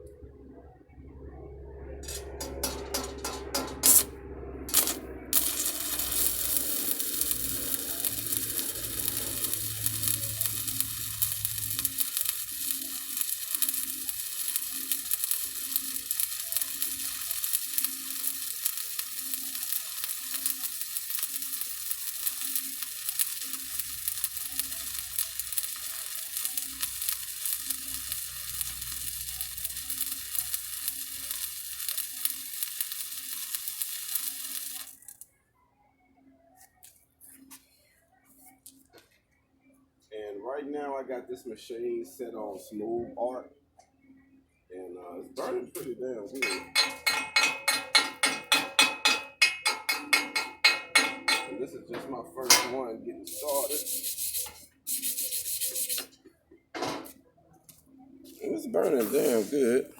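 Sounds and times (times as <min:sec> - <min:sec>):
welding arc crackling and sizzling: 0:02.0 - 0:35.3, 0:45.8 - 0:51.8, 0:52.4 - 0:56.2, 0:58.2 - 0:59.9.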